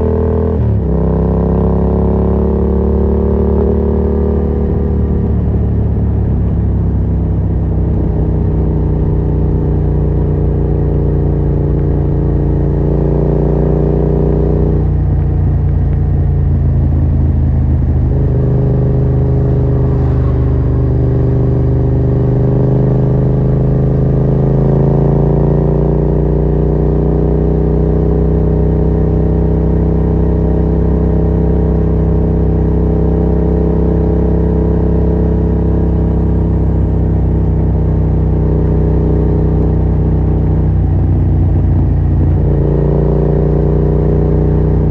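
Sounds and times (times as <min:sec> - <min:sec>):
motorcycle engine running loud: 0:00.0 - 0:44.9.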